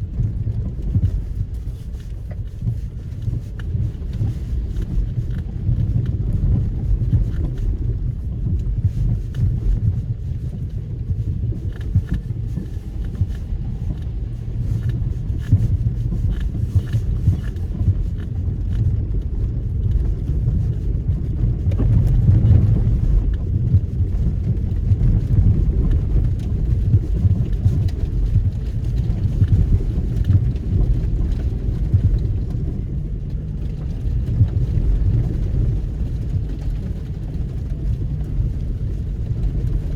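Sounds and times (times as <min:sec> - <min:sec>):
car driving slowly off-road: 0:00.0 - 0:39.9.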